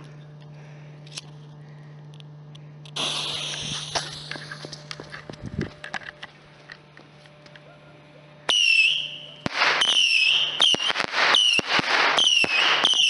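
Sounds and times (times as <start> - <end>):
whistling firework rockets launching: 3.0 - 4.9, 8.5 - 13.0.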